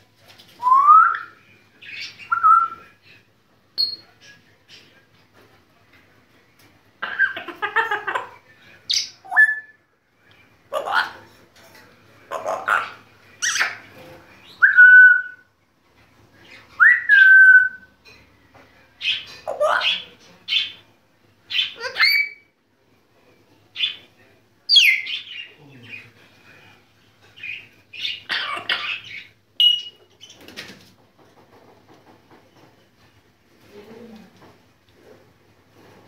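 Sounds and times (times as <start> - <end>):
parrot squawks and chirps: 7.0 - 9.8, 10.7 - 11.2, 12.3 - 15.5, 16.7 - 17.9, 19.0 - 20.8, 21.5 - 22.5, 27.4 - 30.4
parrot whistling: 16.8 - 17.9.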